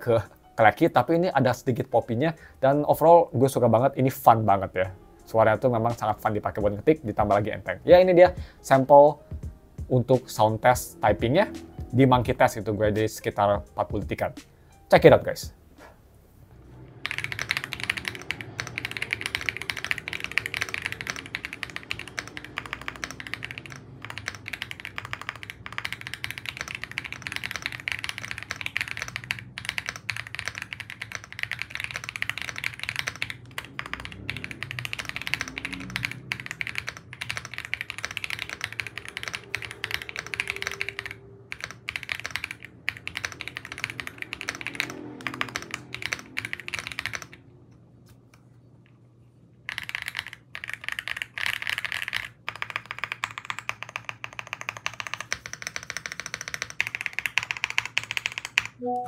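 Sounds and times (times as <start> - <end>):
mechanical keyboard typing: 17.0 - 47.4, 49.7 - 59.0.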